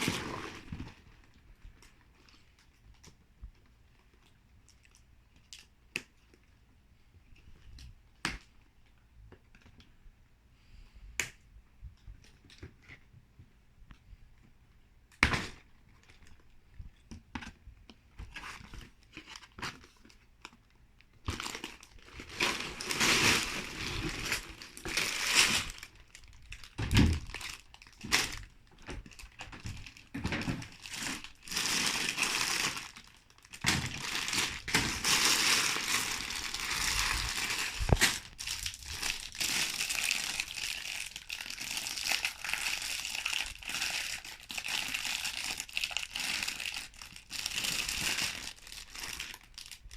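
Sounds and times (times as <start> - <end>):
plastic bags crinkling: 0.0 - 2.3, 18.3 - 49.9.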